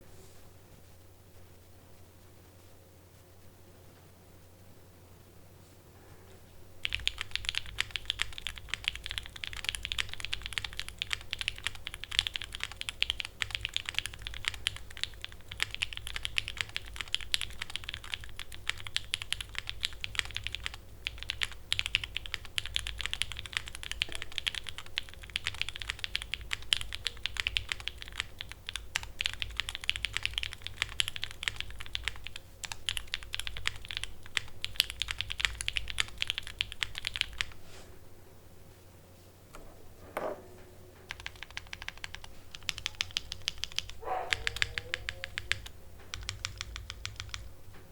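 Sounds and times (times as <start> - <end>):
mechanical keyboard typing: 6.8 - 37.6, 41.1 - 47.5.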